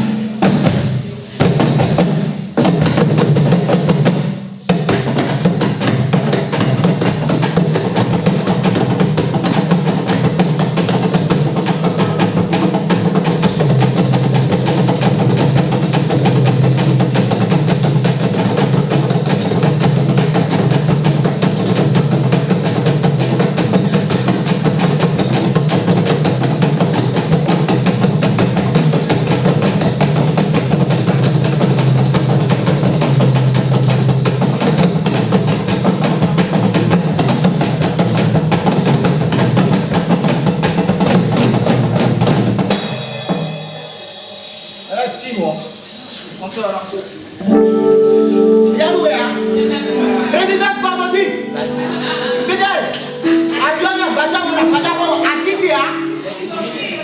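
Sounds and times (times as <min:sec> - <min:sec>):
drums over low bass line: 0:00.0 - 0:44.8.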